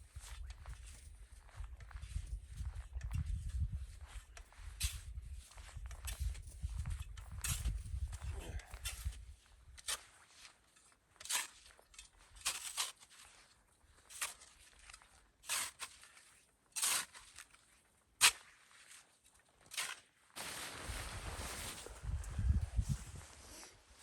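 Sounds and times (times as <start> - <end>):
footsteps crunching through snow: 20.4 - 24.0.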